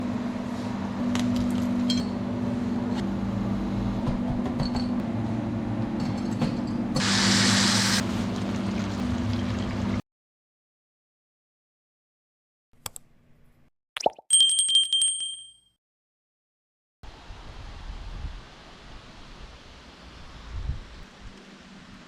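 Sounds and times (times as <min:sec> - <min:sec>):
loud sizzling hiss: 0:07.0 - 0:08.0.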